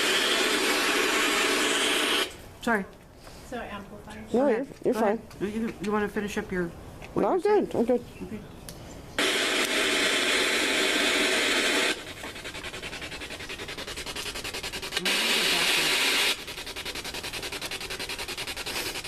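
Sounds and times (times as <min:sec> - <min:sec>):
radio static bursts: 0:00.0 - 0:02.4, 0:09.2 - 0:12.1, 0:15.0 - 0:16.4
radio scanner rapid clicks: 0:09.2 - 0:12.4.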